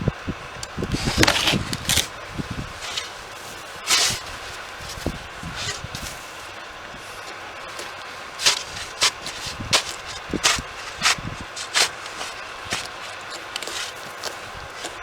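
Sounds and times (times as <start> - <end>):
snow crunching and scraping: 0.4 - 15.0.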